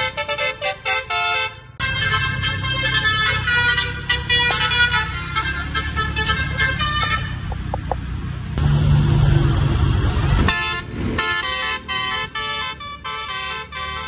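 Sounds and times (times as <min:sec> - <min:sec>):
musical air horns playing a tune: 0:00.0 - 0:07.5, 0:10.4 - 0:14.0.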